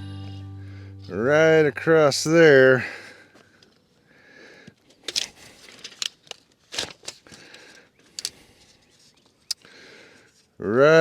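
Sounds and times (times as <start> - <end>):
soft rustling: 5.3 - 9.5.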